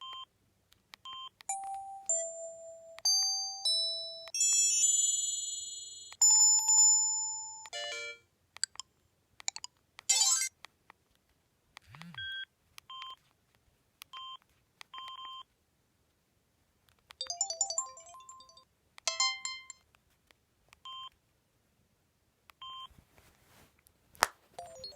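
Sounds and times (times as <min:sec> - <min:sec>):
quick melodic ringtone notes: 0:01.5 - 0:08.2.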